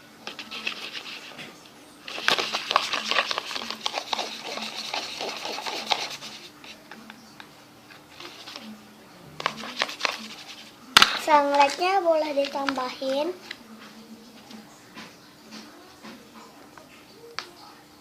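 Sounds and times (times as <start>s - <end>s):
spoon scraping and clicking container: 2.1s - 6.3s.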